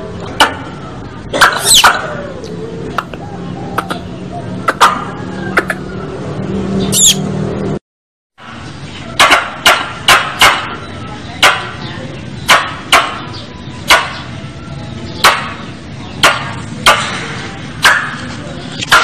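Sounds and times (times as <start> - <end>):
squirrel call chips: 1.5 - 1.9, 6.9 - 7.2.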